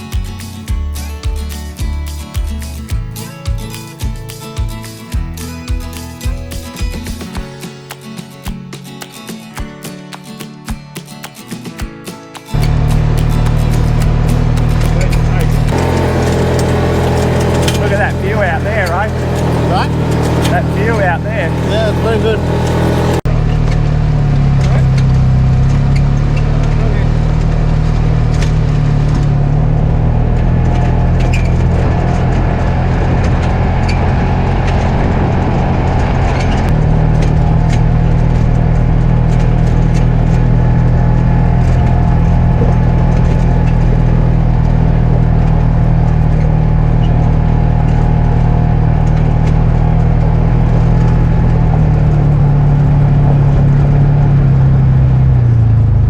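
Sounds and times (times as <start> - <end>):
vehicle engine running: 0.0 - 7.3, 12.5 - 56.0.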